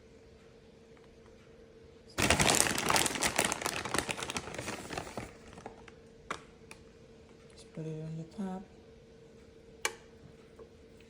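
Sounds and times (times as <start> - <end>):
plastic bag crinkling: 2.2 - 6.4.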